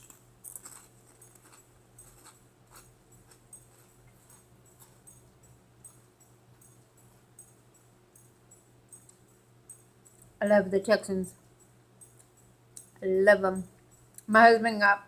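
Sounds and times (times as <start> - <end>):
quiet chewing clicks: 0.0 - 10.4, 11.3 - 13.0, 13.7 - 14.3
low electrical hum: 0.0 - 15.0.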